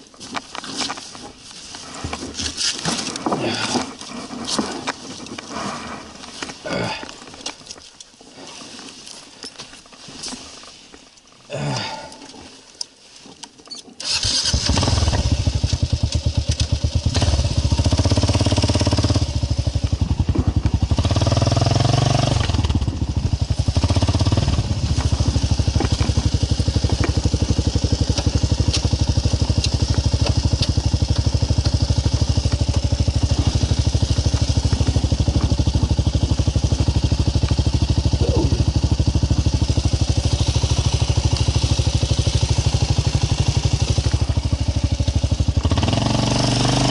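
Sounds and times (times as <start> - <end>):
motorcycle engine starting and idling: 14.0 - 46.9.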